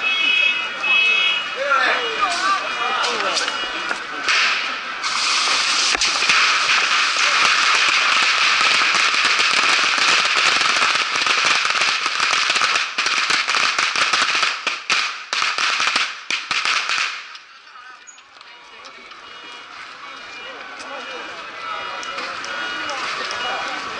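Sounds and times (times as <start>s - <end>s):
bottle rockets hissing and crackling: 4.2s - 17.4s.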